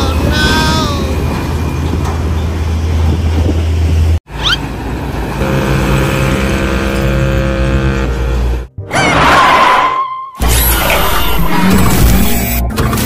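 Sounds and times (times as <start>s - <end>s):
heavy vehicle engine humming: 0.0s - 8.8s
multi-note horn blast: 5.4s - 8.7s.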